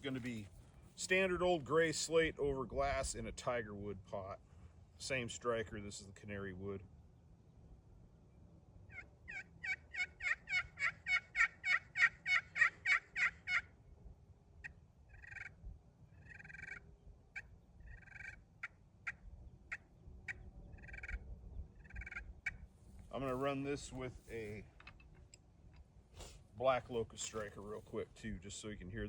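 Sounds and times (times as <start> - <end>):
turkey call clucks: 8.9 - 13.8, 14.6 - 22.7
turkey call yelps: 8.9 - 13.8, 14.6 - 22.7.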